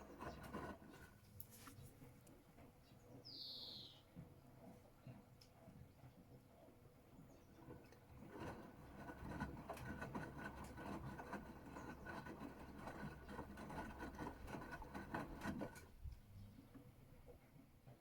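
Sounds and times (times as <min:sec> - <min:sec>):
washing machine motor humming: 0:07.6 - 0:16.1
laundry and water tumbling: 0:07.6 - 0:16.4.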